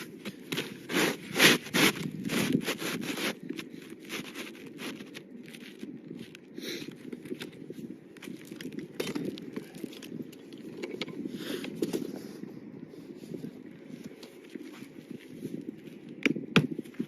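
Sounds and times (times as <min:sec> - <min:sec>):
shingles scraping and crackling: 0:00.0 - 0:12.0.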